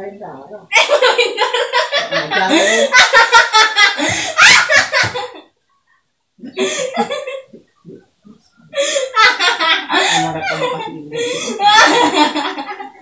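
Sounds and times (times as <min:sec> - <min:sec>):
people laughing and talking: 0:00.7 - 0:05.4, 0:06.4 - 0:13.0.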